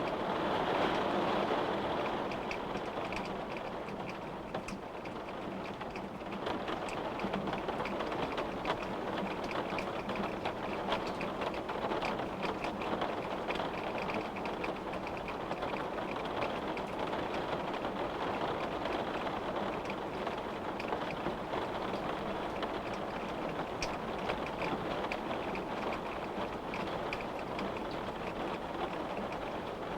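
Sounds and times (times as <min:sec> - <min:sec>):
raindrops ticking on window: 0:00.0 - 0:29.9.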